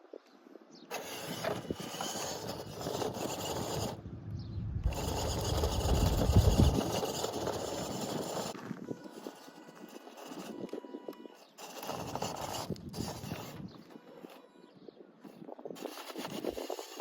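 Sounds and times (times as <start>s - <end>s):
toy truck motor whirring: 0.9s - 4.0s, 4.8s - 17.0s.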